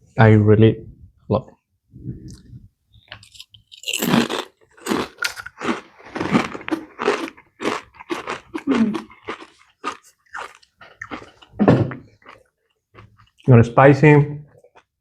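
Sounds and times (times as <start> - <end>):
potato chips crunching: 3.1 - 13.6.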